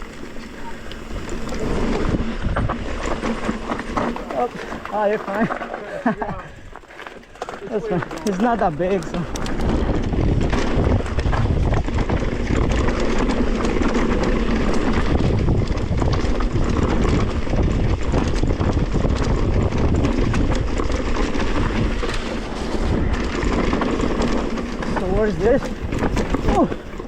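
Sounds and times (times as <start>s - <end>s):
wind rumble on microphone: 0.0s - 4.6s, 7.9s - 27.0s
bike rattling: 0.0s - 27.0s
bike tyres rolling on dirt: 0.0s - 27.0s
clicks and knocks from bumps: 6.6s - 27.0s.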